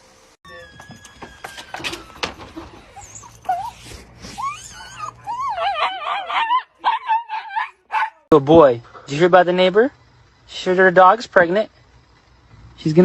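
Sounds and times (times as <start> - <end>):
dog whining and whimpering: 0.5 - 8.3.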